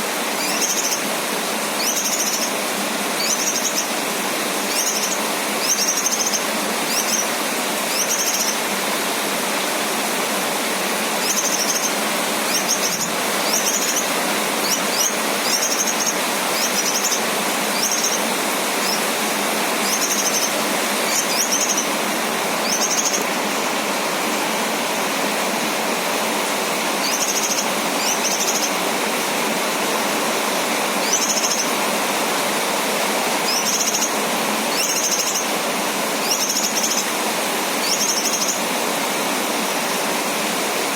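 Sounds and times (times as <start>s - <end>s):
rain hiss: 0.0s - 40.9s
bird chirping: 0.4s - 1.0s, 1.8s - 2.6s, 3.2s - 3.9s, 4.7s - 7.3s, 7.9s - 8.6s, 11.2s - 19.0s, 19.8s - 22.0s, 22.6s - 23.3s, 27.0s - 28.8s, 31.0s - 31.7s, 33.5s - 35.5s, 36.2s - 37.1s, 37.8s - 38.6s.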